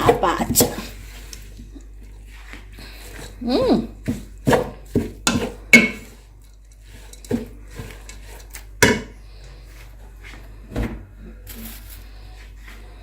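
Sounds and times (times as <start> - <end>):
utensil clinking against dish: 5.2 - 9.1.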